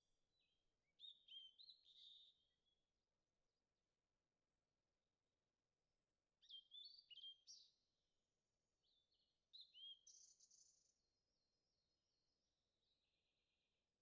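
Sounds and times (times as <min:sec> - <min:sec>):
faint bird chirps: 0:00.0 - 0:02.8, 0:06.4 - 0:07.8, 0:08.8 - 0:11.1.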